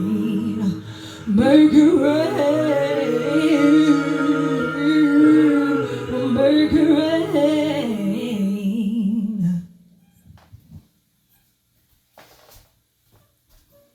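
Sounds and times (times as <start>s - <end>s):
woman singing with vibrato: 0.0s - 9.9s.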